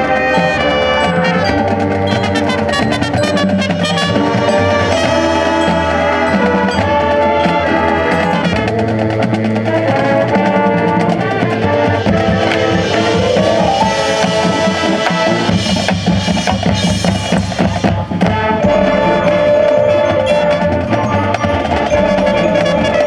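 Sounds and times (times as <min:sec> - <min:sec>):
brass chords: 0:00.0 - 0:08.7, 0:10.0 - 0:15.9, 0:21.9 - 0:23.0
drumline beat: 0:00.5 - 0:05.4, 0:09.7 - 0:19.6.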